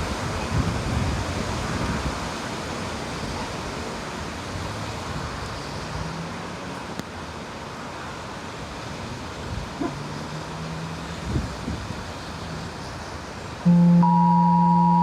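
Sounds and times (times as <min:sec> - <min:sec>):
strong wind blowing: 0:00.0 - 0:05.6, 0:11.1 - 0:12.2
wind buffeting microphone: 0:00.0 - 0:05.6, 0:11.1 - 0:12.8.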